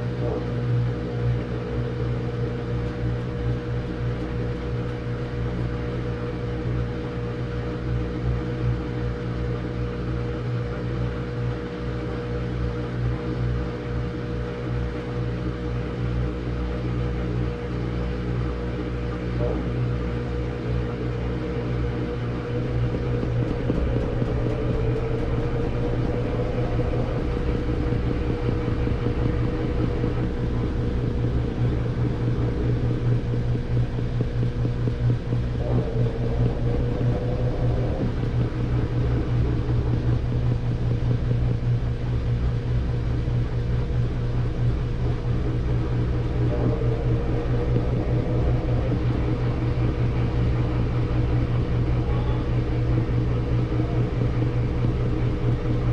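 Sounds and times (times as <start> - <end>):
washing machine spinning: 0.0 - 55.9.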